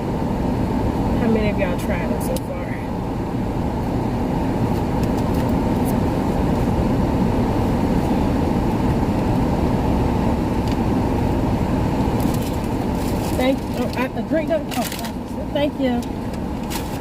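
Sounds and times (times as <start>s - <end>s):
air conditioning blowing: 0.0s - 17.0s.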